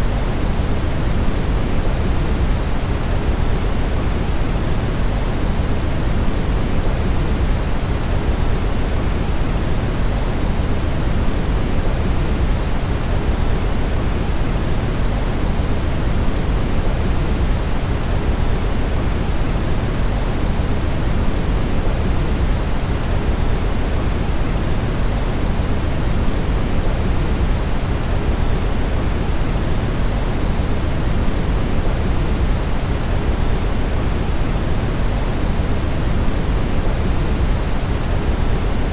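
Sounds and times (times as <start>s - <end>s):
brown noise hiss: 0.0s - 38.9s.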